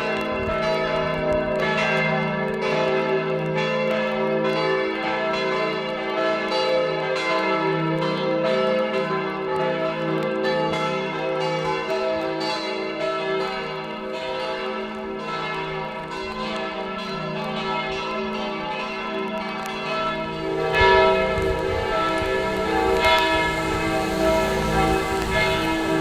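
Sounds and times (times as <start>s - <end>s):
church bells ringing: 0.0s - 26.0s
low rumble: 20.0s - 26.0s.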